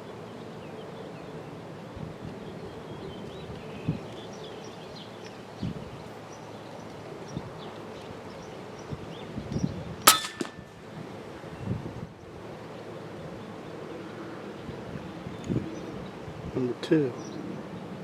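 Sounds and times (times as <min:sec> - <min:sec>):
light wind: 0:00.0 - 0:18.0
handling thumps: 0:10.1 - 0:10.7.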